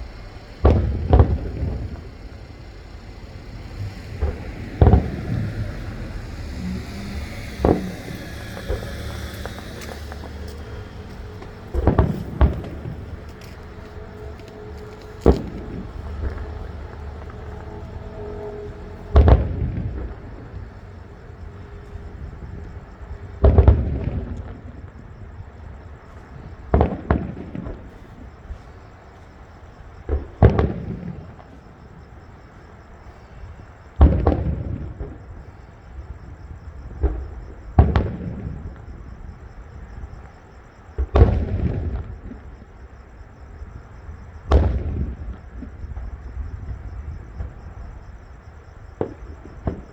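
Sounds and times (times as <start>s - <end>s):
fireworks booming with echo: 0.0s - 49.9s.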